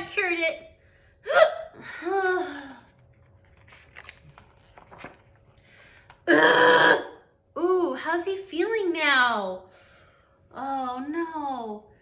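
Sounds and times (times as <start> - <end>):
book pages rustling: 2.9 - 5.6
soft clicks of book pages: 3.0 - 6.2.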